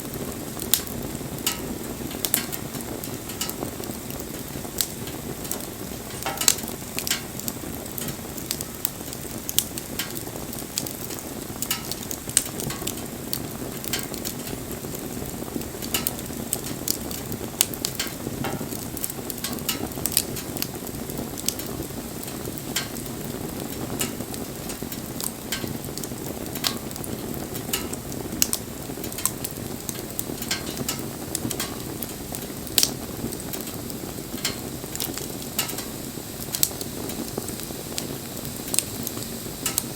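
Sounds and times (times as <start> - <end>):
campfire crackling and popping: 0.0 - 39.9
low rush of flame: 0.0 - 39.9.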